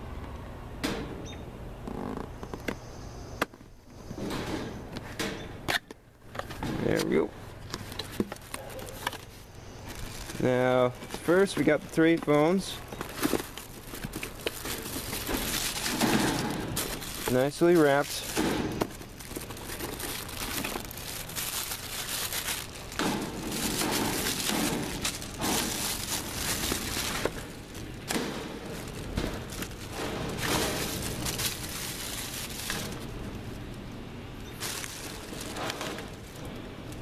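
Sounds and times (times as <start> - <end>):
plastic wrapping crinkling: 7.7 - 37.0.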